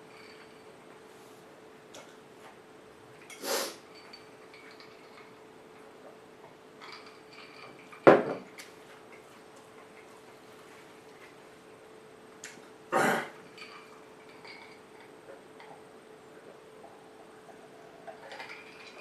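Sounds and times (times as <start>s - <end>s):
faint steady hum: 0.0s - 19.0s
tableware set down on table: 8.0s - 8.6s.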